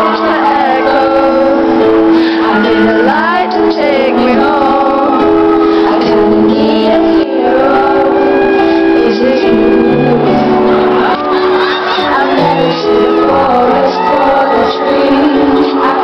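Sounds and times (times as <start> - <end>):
held accompaniment chords: 0.0 - 16.0
woman singing: 0.0 - 16.0.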